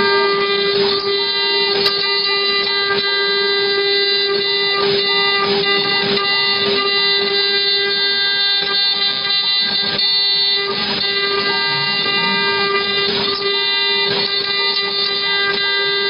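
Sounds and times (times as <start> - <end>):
router spindle whine: 0.0 - 16.0.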